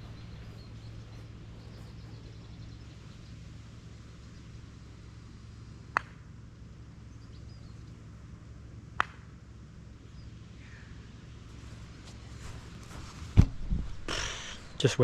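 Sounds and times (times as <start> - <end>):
faint bird chirps: 0.0 - 4.7
steady low rumble: 0.0 - 15.0.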